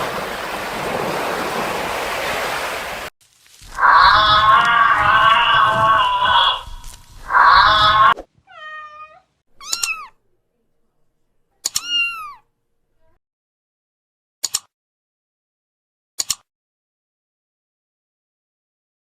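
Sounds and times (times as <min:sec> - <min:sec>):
small animal high-pitched cries: 0:03.8 - 0:10.2, 0:11.7 - 0:12.5
sharp clicks: 0:11.6 - 0:11.9, 0:14.4 - 0:14.7, 0:16.2 - 0:16.5.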